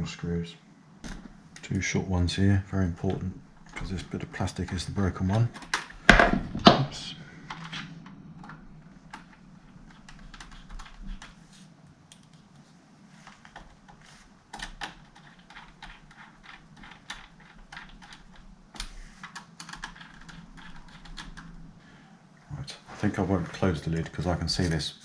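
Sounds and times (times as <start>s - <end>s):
laptop keyboard clicking: 7.5s - 11.4s, 12.1s - 12.5s, 13.2s - 21.6s.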